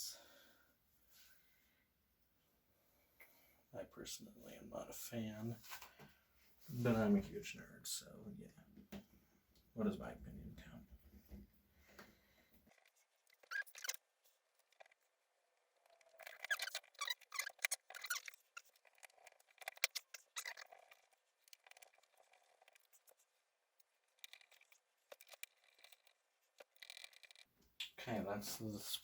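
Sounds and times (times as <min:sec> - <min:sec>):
small parts clicking and tapping: 0:12.0 - 0:27.9.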